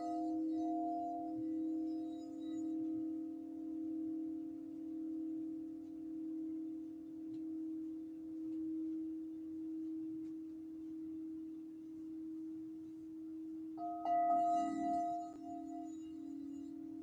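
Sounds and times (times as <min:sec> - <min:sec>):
crystal singing bowls tone: 0:00.0 - 0:10.2, 0:13.8 - 0:17.0.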